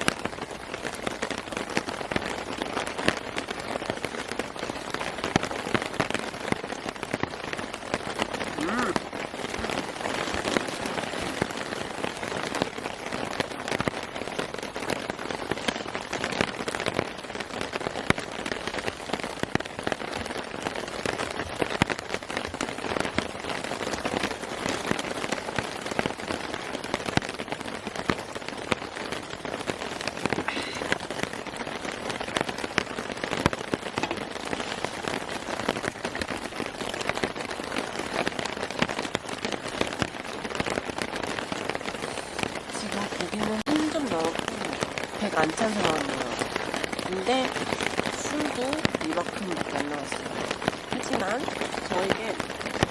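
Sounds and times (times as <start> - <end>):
steady rain ticking on surface: 0.0 - 52.9.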